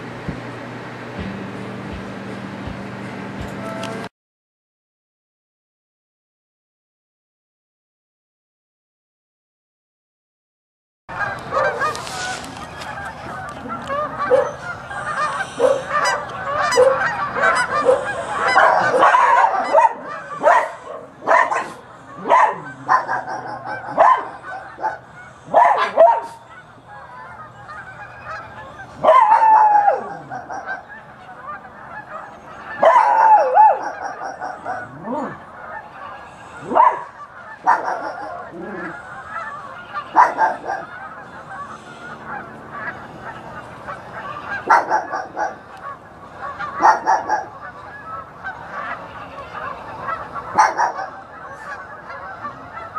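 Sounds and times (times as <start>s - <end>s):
dogs barking: 11.1s - 52.9s
geese honking: 11.1s - 52.9s.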